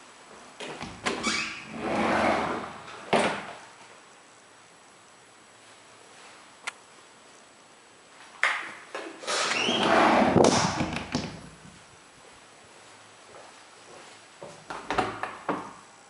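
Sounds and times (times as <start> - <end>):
door opening and shutting: 0.6 - 3.6, 9.2 - 11.4.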